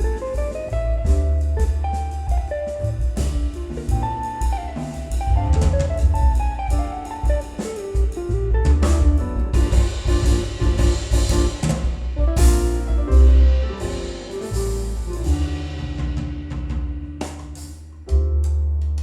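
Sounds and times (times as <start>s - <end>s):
drum kit playing: 0.0s - 19.0s
held bass notes: 0.0s - 19.0s.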